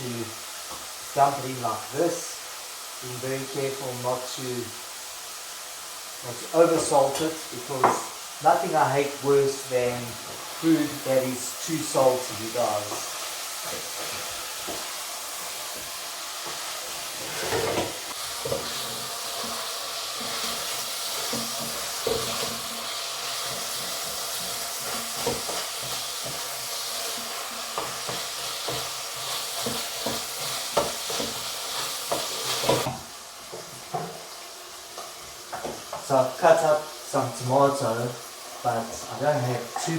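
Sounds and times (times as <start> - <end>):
meat sizzling in a frying pan: 0.0 - 39.9
utensil scraping a pan: 16.4 - 32.9.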